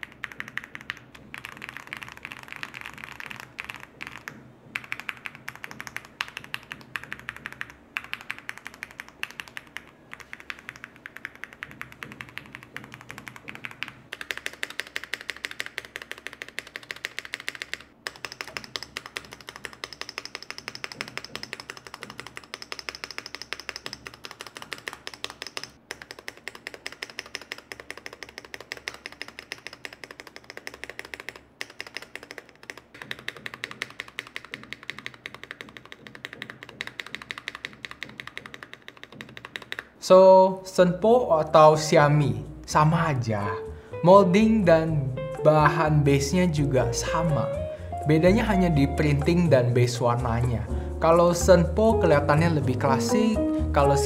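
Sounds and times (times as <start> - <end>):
mechanical keyboard typing: 0.0 - 40.0.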